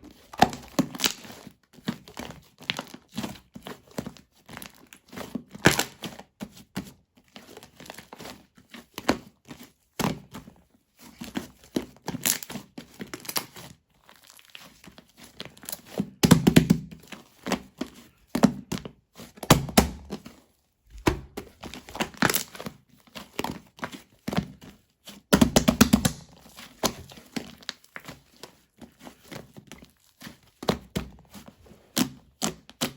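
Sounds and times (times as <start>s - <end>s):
slime crackling and popping: 0.2s - 1.3s, 21.6s - 22.6s, 25.3s - 28.1s.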